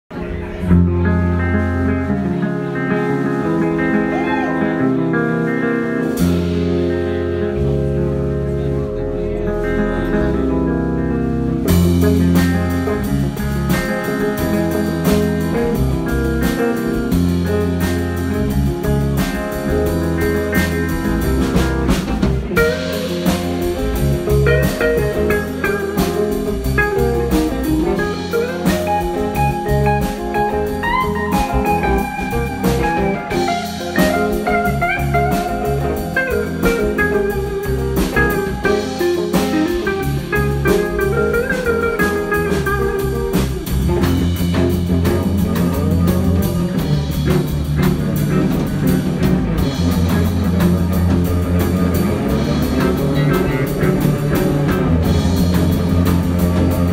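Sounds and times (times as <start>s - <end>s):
blues-rock band music: 0.1s - 56.9s.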